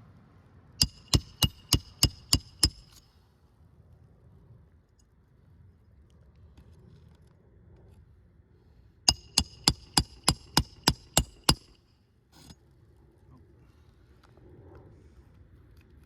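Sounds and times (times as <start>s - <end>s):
hammer striking roofing nail: 0.8s - 2.9s, 9.1s - 11.8s.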